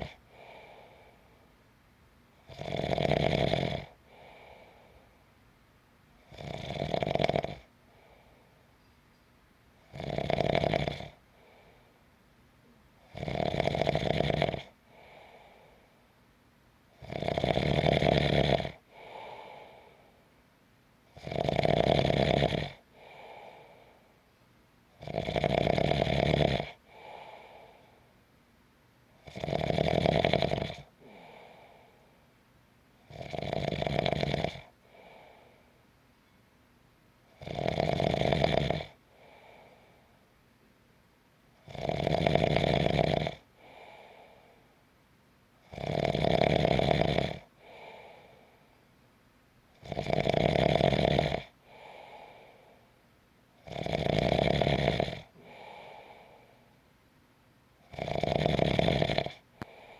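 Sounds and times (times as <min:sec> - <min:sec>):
person snoring: 0:00.0 - 0:01.1, 0:02.5 - 0:04.8, 0:06.3 - 0:07.7, 0:09.9 - 0:11.2, 0:13.1 - 0:15.6, 0:17.0 - 0:19.9, 0:21.2 - 0:23.8, 0:25.0 - 0:27.8, 0:29.2 - 0:32.0, 0:33.1 - 0:35.5, 0:37.4 - 0:39.8, 0:41.7 - 0:44.4, 0:45.7 - 0:48.4, 0:49.8 - 0:52.5, 0:53.6 - 0:56.5, 0:57.9 - 0:59.9
faint short breath: 0:47.6 - 0:48.8, 0:59.6 - 0:59.9.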